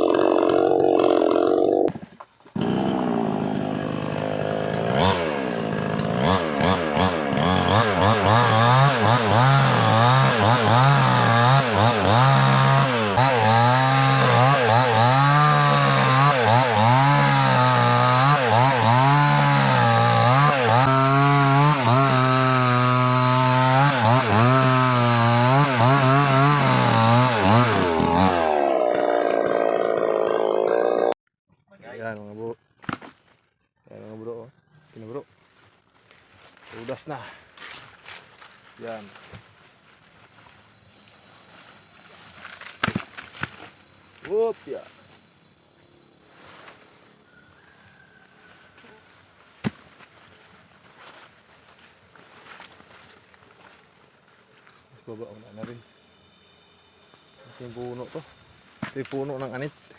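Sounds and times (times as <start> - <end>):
chainsaw cutting wood: 0.0 - 31.2, 42.4 - 43.8.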